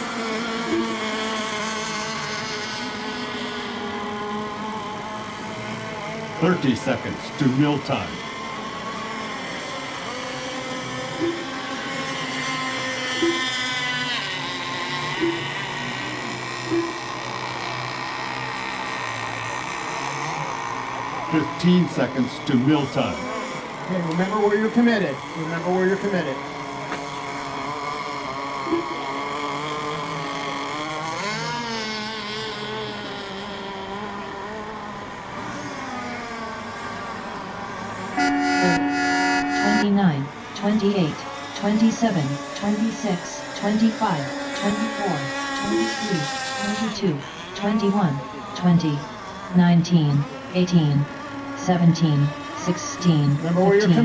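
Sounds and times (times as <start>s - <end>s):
model boat engines buzzing: 0.0s - 54.0s
short low blip: 13.2s - 13.5s, 15.2s - 15.6s, 16.7s - 17.1s.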